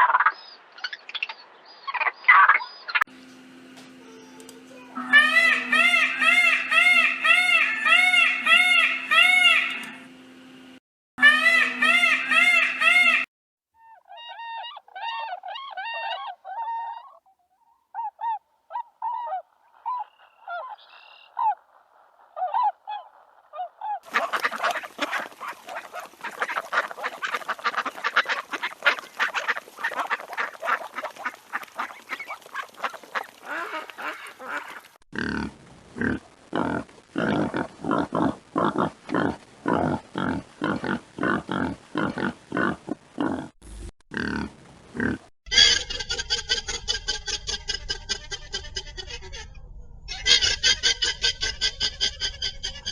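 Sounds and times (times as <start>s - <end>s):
waterfowl calling: 5.0s - 10.0s, 11.2s - 13.3s, 22.4s - 35.0s.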